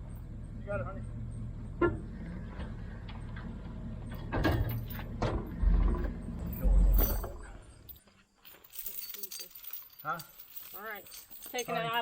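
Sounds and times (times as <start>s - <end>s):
vehicle engine running: 0.0s - 7.8s
mechanical clanks and knocks: 1.8s - 7.6s.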